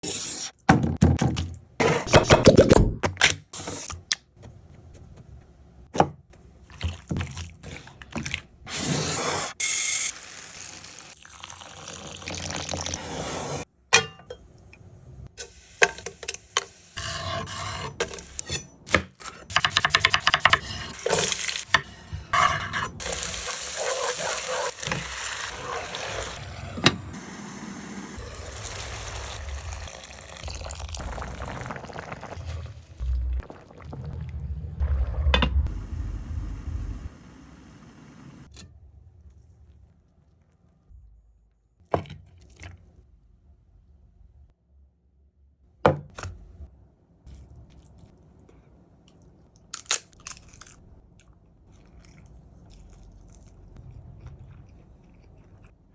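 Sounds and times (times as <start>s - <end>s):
liquid pouring: 10.4s - 13.0s, 28.2s - 35.7s
utensils clinking on cookware: 13.9s - 14.5s
stirring in a pot: 19.8s - 26.9s.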